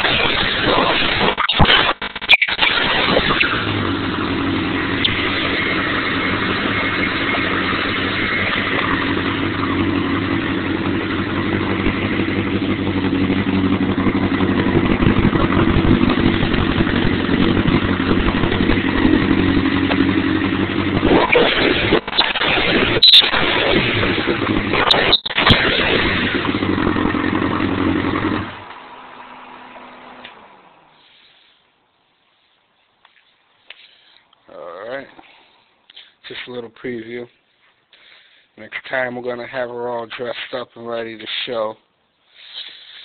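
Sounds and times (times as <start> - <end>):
motorcycle engine running: 2.0 - 30.4.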